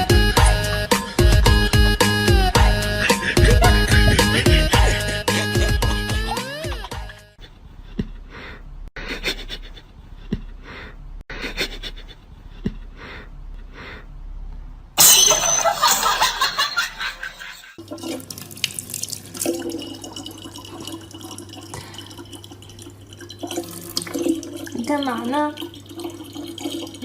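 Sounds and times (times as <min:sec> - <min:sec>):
low hum: 0:03.4 - 0:06.4
water running from a tap: 0:17.8 - 0:27.0.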